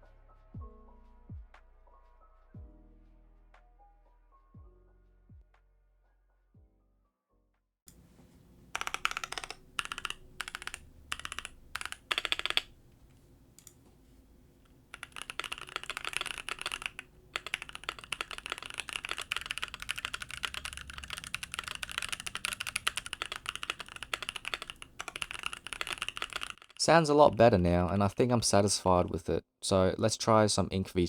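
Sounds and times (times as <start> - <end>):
mechanical keyboard typing: 7.9 - 27.4.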